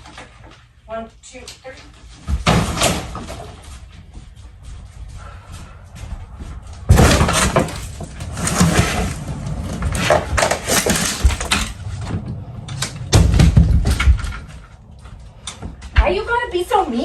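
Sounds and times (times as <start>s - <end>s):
demolition debris crashing: 6.9s - 14.8s.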